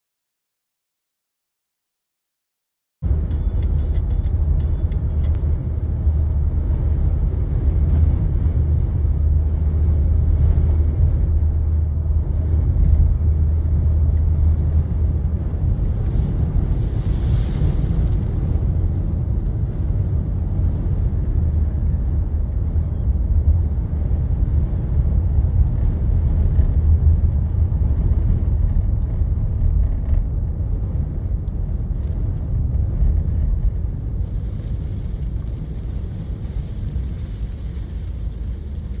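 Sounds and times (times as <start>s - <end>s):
strong wind buffeting microphone: 3.0s - 39.0s.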